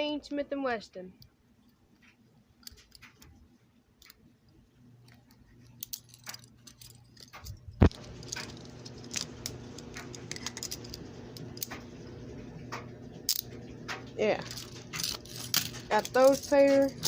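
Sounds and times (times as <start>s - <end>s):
low steady hum: 0.0s - 17.0s
handcuff chain jingling: 5.8s - 11.7s, 14.4s - 17.0s.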